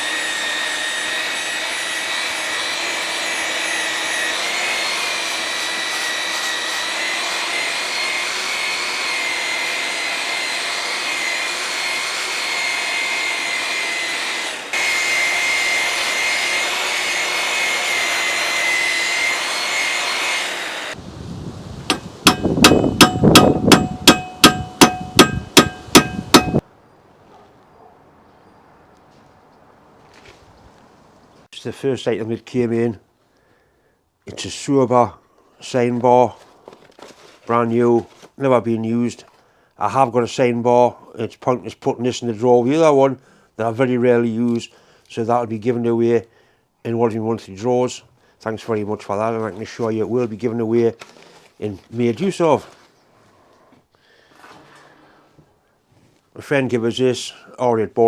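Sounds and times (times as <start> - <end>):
power tool whining on steel: 0.0 - 21.0
ringing metal strikes: 21.9 - 26.6.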